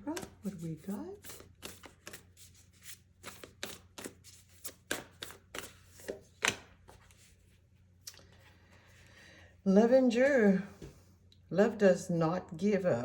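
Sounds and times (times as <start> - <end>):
cards being shuffled: 0.0 - 7.6.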